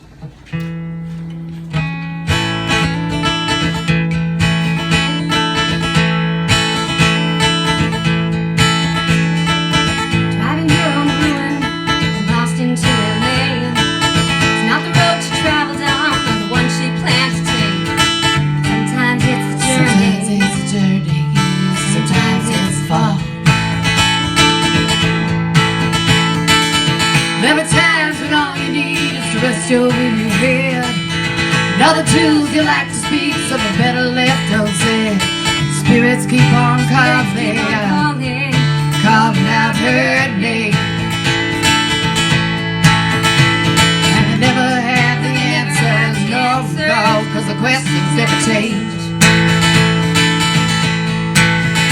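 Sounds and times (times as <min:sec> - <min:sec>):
strummed acoustic guitar: 0:00.0 - 0:51.9
country-rock instrumental: 0:00.2 - 0:51.9
steady low bass notes: 0:19.4 - 0:26.7.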